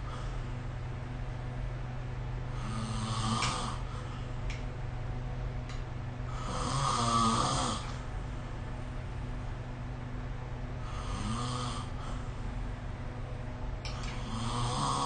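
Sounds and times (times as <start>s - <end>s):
steady low hum: 0.0s - 15.0s
person snoring: 2.6s - 4.0s, 6.3s - 7.9s, 10.8s - 12.0s, 14.2s - 15.0s.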